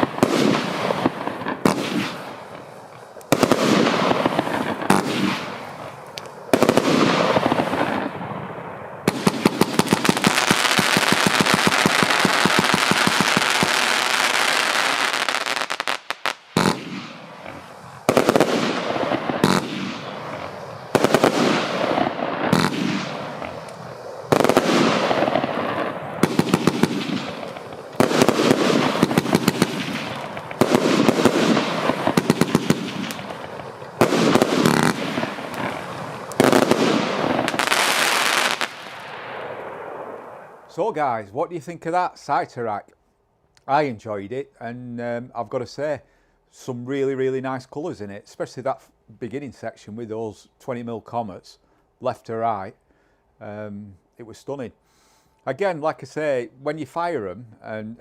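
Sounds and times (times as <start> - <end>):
firework crackling: 0.0 - 41.0.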